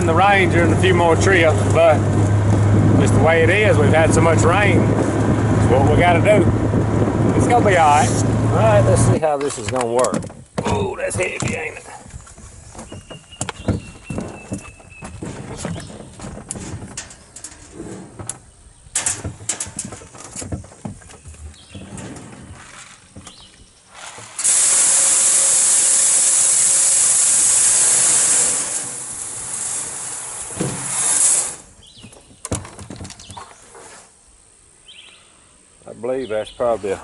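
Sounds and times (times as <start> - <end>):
tub knocking and clattering: 9.5 - 12.0, 12.8 - 23.4
grain pouring hiss: 23.9 - 31.7.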